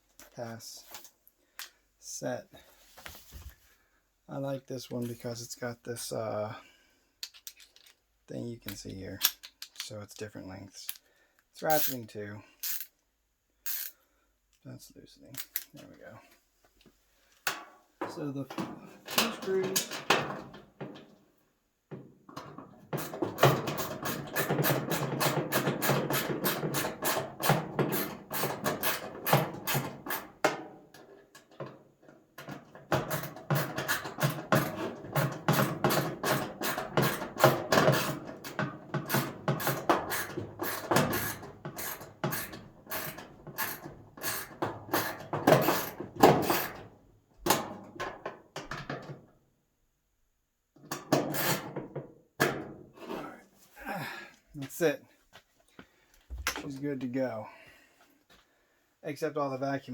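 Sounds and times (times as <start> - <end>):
screwdriver ratchet clicking: 13.7 - 14.0.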